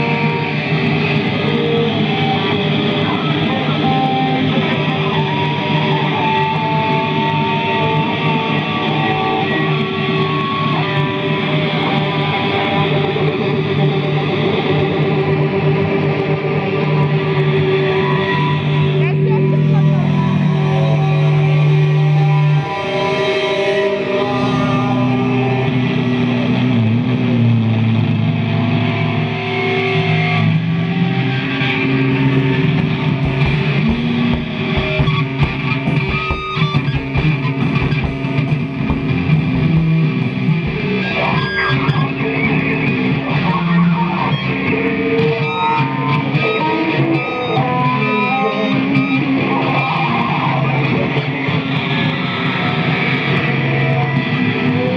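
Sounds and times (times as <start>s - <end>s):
noise music drones: 0.0s - 47.0s
guitar-like sounds: 0.0s - 54.9s
heavy low drone: 15.0s - 26.5s, 31.7s - 42.2s.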